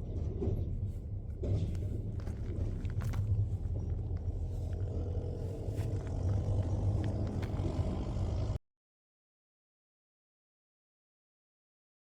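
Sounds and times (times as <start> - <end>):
diesel engine rumbling: 0.0 - 8.6.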